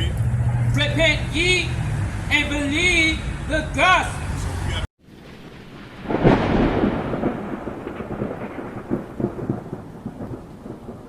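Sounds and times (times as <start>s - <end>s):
rolling thunder clap: 5.1s - 11.0s.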